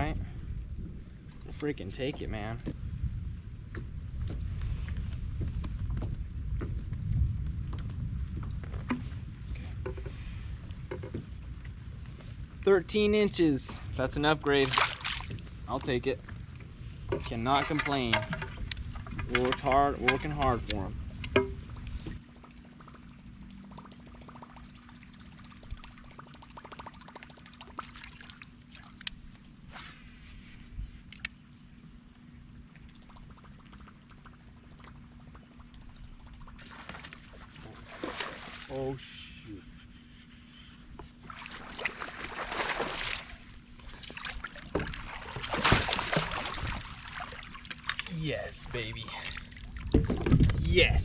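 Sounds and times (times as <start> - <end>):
steady low hum: 0.0 - 51.0
water splashing and trickling: 13.6 - 15.9, 17.1 - 29.7, 32.5 - 39.0, 41.2 - 51.0.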